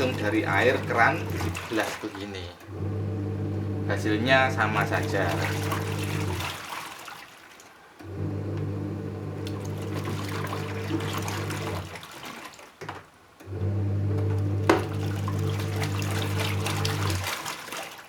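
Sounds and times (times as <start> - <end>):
washing machine motor humming: 0.0 - 6.8, 8.0 - 12.4, 13.4 - 18.0
water swishing: 0.0 - 12.8, 13.6 - 18.0.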